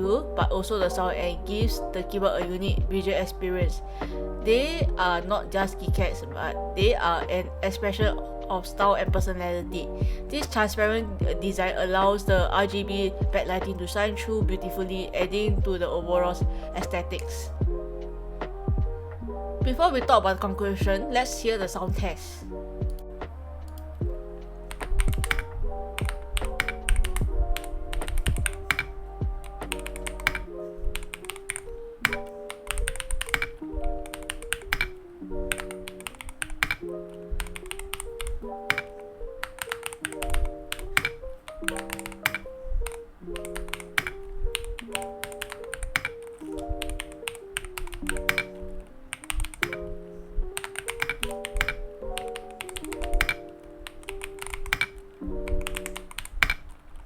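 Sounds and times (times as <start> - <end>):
melodic music: 0.0 - 56.9
mechanical keyboard typing: 24.7 - 28.9, 29.7 - 49.9, 50.5 - 56.8.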